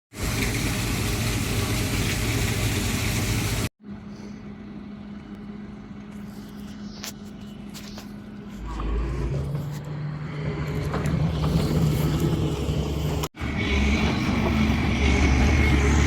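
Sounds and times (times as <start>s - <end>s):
quiet engine hum: 3.8s - 16.0s
engine running loud: 8.4s - 16.0s.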